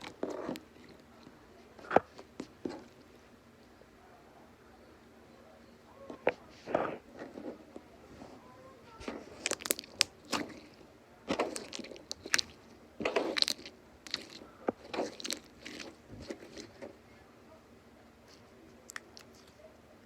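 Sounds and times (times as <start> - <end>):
slime squelching: 0.0 - 3.0, 9.0 - 17.0, 18.8 - 19.6.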